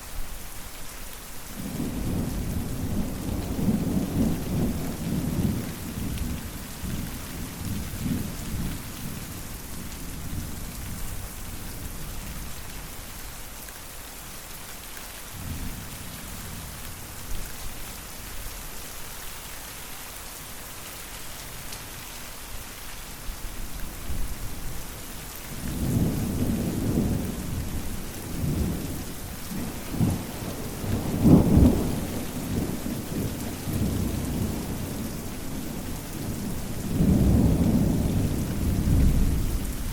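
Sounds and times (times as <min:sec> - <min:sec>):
constant rain: 0:00.0 - 0:39.9
rolling thunder: 0:25.6 - 0:39.9.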